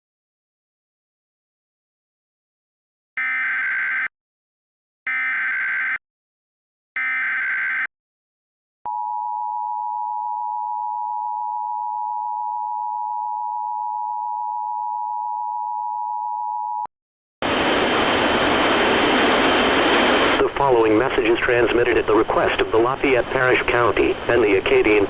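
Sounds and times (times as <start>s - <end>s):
loud static hiss: 17.4s - 25.0s.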